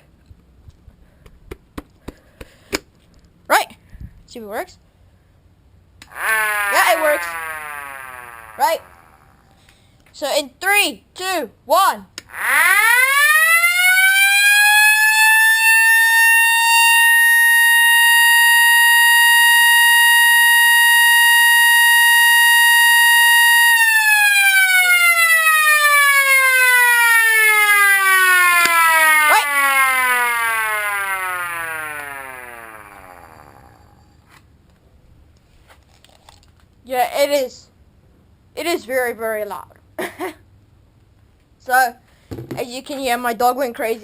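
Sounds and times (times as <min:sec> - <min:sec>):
air-raid siren wailing: 0:06.1 - 0:09.4, 0:12.3 - 0:34.2.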